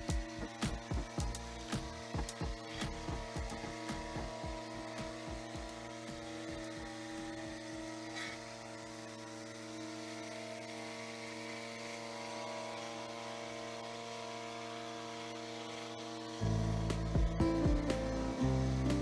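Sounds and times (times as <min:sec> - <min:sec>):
engine droning steadily: 0:00.0 - 0:19.0.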